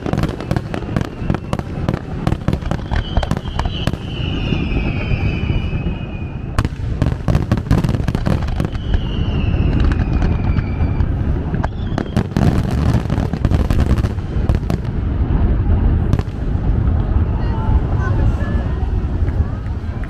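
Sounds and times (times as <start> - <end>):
descending firework whistle: 0.0 - 14.1, 15.5 - 20.0
fireworks bangs and crackling: 0.0 - 20.0
low rumble: 13.8 - 20.0.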